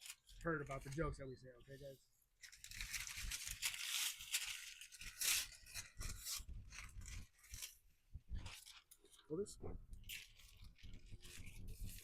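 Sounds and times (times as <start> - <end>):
foil tape crinkling and tearing: 0.0 - 1.1, 2.4 - 7.8, 8.4 - 9.3, 9.9 - 12.0.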